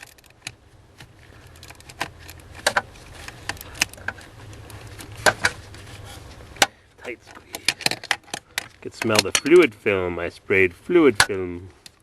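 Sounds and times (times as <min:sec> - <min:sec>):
low steady hum: 0:00.0 - 0:12.0
metal tools clinking: 0:07.1 - 0:09.7.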